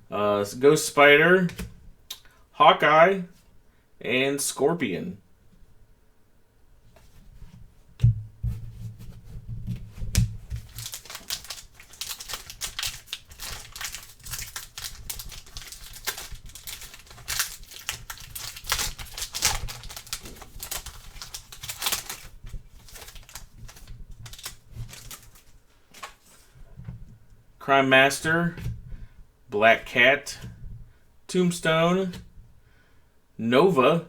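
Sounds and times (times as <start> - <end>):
cards crackling: 9.9 - 26.5
wrapper tearing and crinkling: 10.2 - 26.4.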